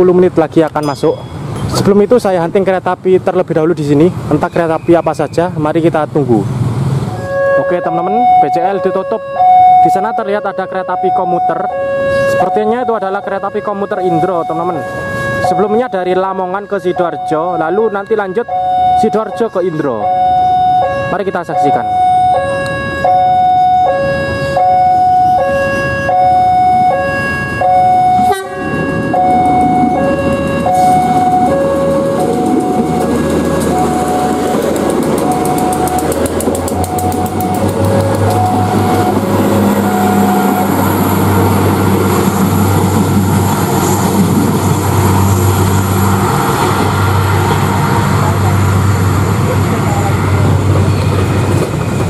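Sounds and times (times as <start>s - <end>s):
diesel train engine rumble: 0.0s - 52.0s
two-tone warning alarm: 7.1s - 44.2s.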